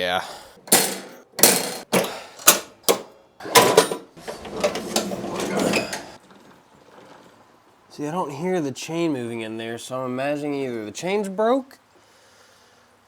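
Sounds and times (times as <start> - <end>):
clattering metal parts: 0.6 - 7.9
metal clanks and rattling: 0.6 - 7.9.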